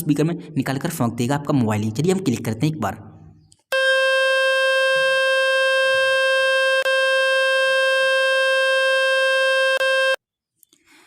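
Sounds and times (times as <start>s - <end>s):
buzzy speaker tone: 3.8s - 10.2s.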